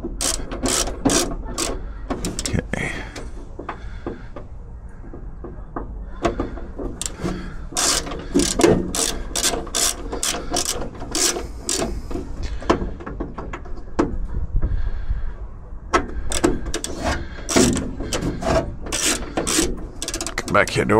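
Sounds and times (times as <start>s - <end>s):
ratcheting screwdriver clicking: 0.0s - 2.5s, 7.0s - 12.1s, 16.3s - 20.5s.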